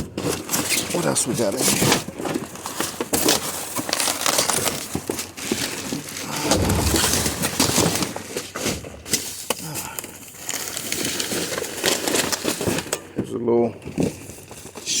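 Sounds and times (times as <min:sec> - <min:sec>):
heavy low thud: 0:06.4 - 0:08.1.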